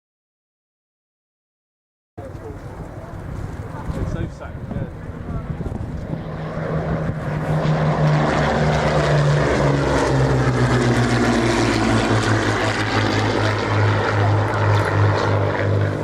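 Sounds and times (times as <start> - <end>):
piston aircraft engine flying past: 2.2 - 16.0.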